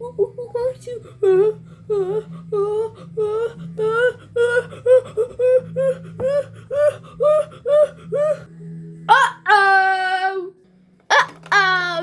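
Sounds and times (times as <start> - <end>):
steady low hum: 0.0 - 9.3.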